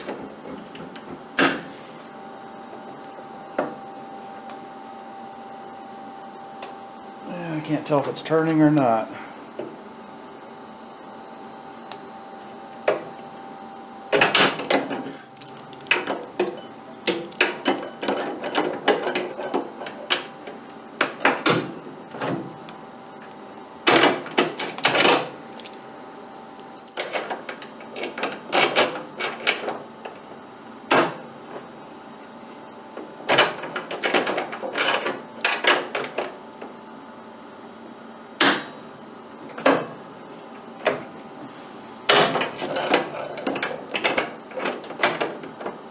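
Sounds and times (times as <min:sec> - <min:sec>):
pliers clicking and scraping on metal: 0:15.4 - 0:19.6.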